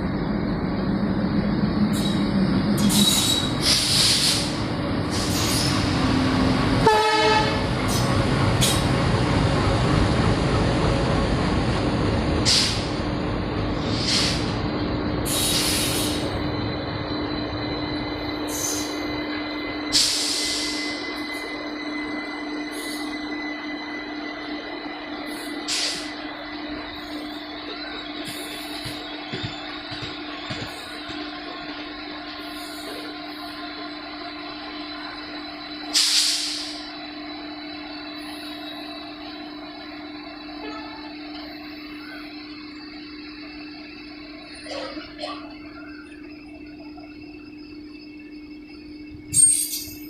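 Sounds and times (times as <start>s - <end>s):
train wheels rumbling on rail: 0.0s - 50.0s
sharp horn blast: 6.8s - 7.7s
high-pitched squeals and hisses: 15.3s - 24.1s.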